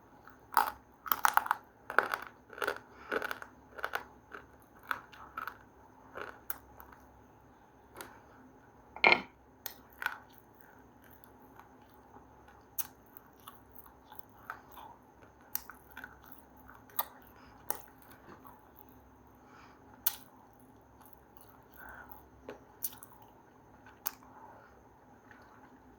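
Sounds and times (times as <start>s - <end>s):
crunchy biting: 0.5s - 7.0s
quiet chewing: 9.7s - 19.0s.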